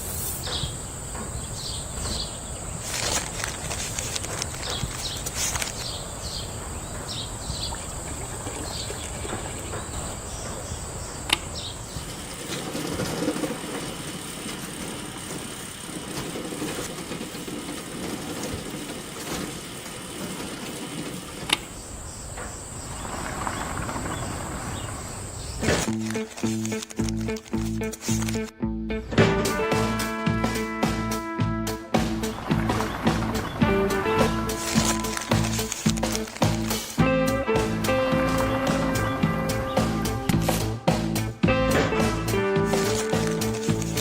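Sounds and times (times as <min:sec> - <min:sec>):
high insect drone: 0:00.0 - 0:28.5, 0:29.2 - 0:44.0
sharp clicks: 0:02.8 - 0:06.0, 0:25.6 - 0:28.5, 0:32.7 - 0:37.0, 0:42.3 - 0:44.0.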